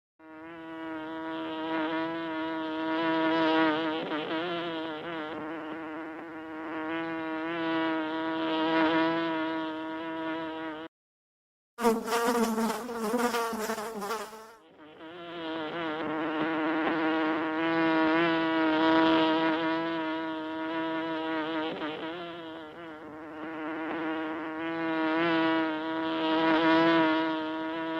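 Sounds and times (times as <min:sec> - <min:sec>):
bees buzzing: 0:11.8 - 0:27.9.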